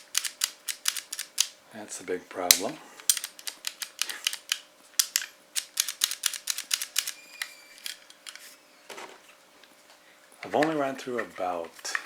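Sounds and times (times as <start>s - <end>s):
air pistol trigger clicking: 0.1s - 1.5s, 2.5s - 7.2s.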